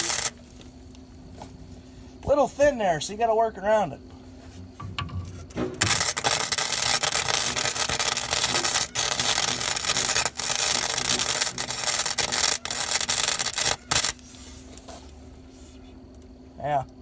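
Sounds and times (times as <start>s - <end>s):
welding arc crackling: 0.0s - 1.0s, 4.6s - 14.9s.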